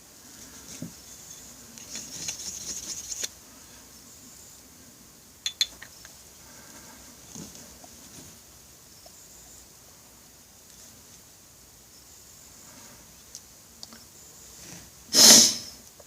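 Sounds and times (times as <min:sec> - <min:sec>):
scratchy rubbing on workbench: 0:01.8 - 0:03.3
sharp metallic clicks: 0:05.5 - 0:06.0.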